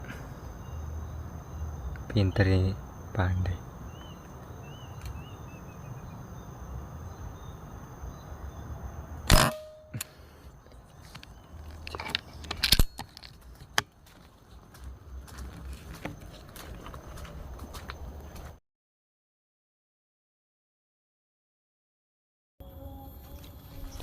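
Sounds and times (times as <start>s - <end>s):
faint bird chirps: 0.0s - 8.8s
air rifle shot: 9.3s - 10.0s
clicks and rattles of gear: 10.7s - 14.3s.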